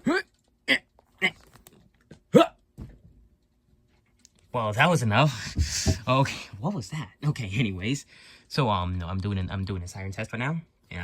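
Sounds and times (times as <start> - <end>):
hiccup-like yelps: 2.3 - 2.6.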